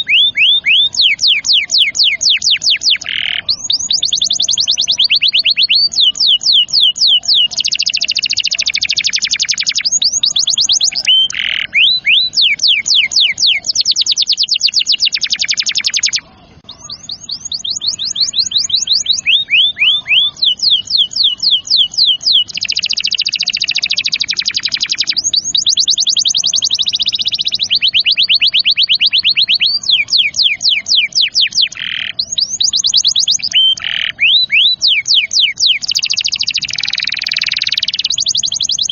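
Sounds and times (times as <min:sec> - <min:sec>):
canary singing rolling trills: 0:00.0 - 0:38.9.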